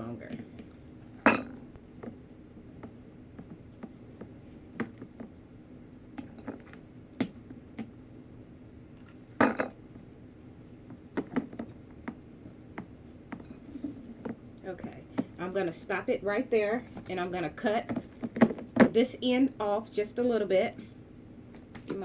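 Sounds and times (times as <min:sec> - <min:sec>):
glass vase knocks and clinks: 0:01.2 - 0:01.6, 0:09.4 - 0:09.8.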